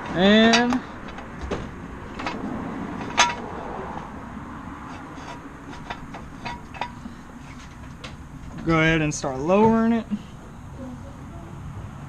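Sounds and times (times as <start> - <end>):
metal jack stand clinking: 0.1 - 1.4, 3.0 - 3.5, 4.9 - 7.9.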